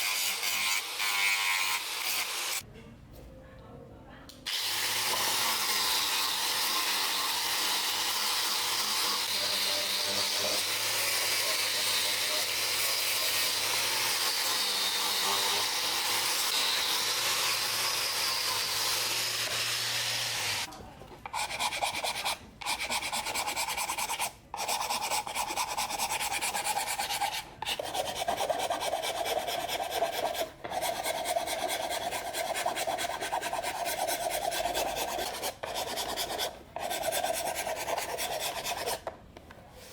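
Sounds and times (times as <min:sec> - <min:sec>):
rapid hand filing or sanding: 0:21.4 - 0:39.0.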